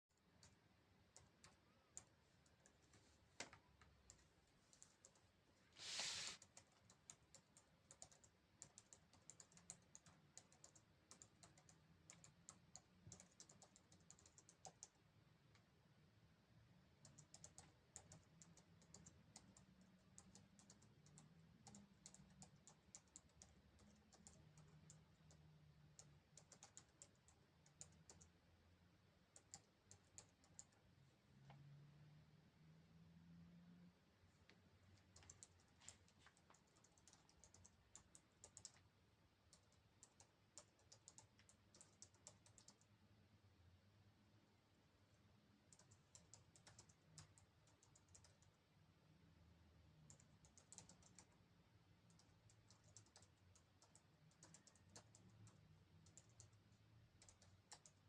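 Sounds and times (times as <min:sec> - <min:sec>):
faint clicks like typing: 0:00.2 - 0:05.3, 0:06.4 - 0:15.7, 0:17.0 - 0:28.3, 0:29.3 - 0:30.8, 0:34.4 - 0:38.9, 0:39.5 - 0:42.9, 0:45.7 - 0:48.6, 0:50.1 - 0:51.4, 0:52.0 - 0:58.0
short hiss: 0:05.8 - 0:06.4.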